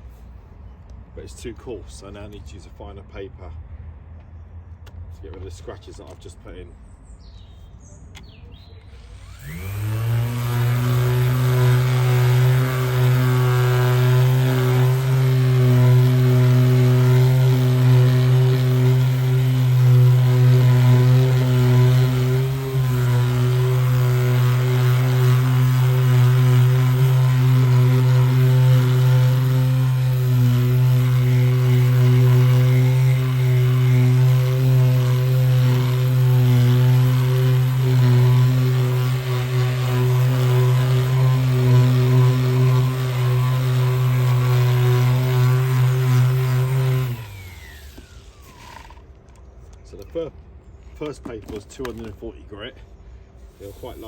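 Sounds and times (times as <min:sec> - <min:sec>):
electric sander humming: 0:09.0 - 0:49.0.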